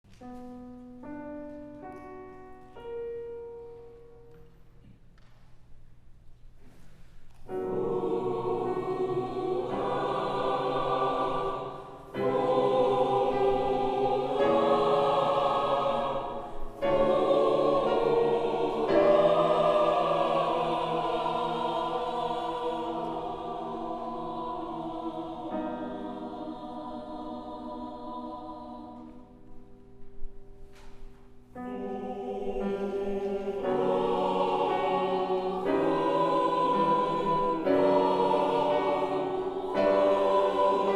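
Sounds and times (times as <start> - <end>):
choir singing sustained chords: 7.5 - 30.3, 31.5 - 40.9.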